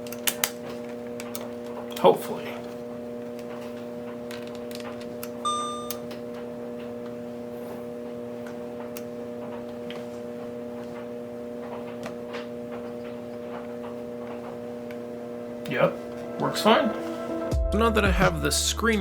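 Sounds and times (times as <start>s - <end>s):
steady background hum: 0.0s - 17.6s
short electronic beep: 5.4s - 6.0s.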